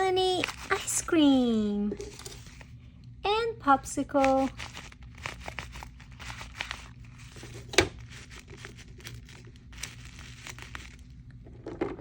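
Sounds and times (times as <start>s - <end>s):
paper squishy crinkling: 0.0s - 1.1s, 4.0s - 11.4s.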